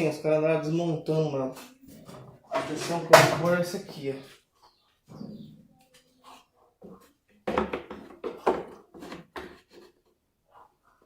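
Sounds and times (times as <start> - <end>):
knocks and scraping rubs: 1.9 - 4.0.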